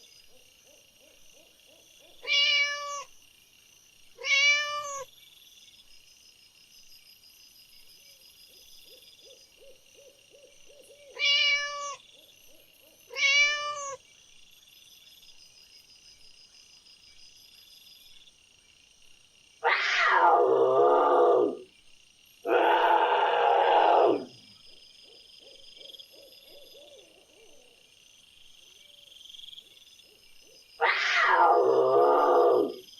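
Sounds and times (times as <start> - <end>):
cat meowing: 2.2 - 3.1, 4.2 - 5.0, 11.2 - 12.0, 13.1 - 14.0, 19.6 - 20.5, 30.8 - 32.7.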